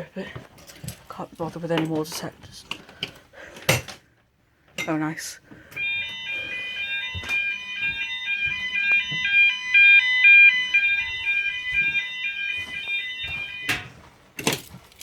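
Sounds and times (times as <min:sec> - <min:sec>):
fire alarm sounders: 0:05.6 - 0:14.2.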